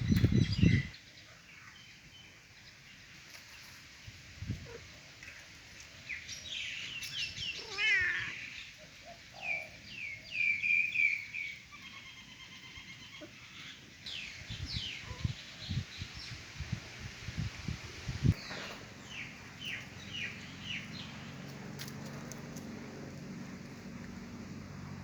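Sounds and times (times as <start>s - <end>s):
cats meowing: 7.5s - 8.5s.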